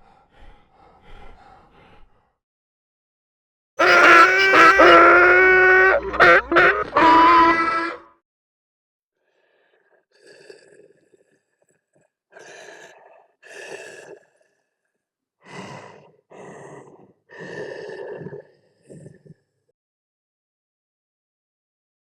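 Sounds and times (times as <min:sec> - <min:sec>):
raspy breathy huffs: 0:00.0 - 0:02.4, 0:15.4 - 0:19.2.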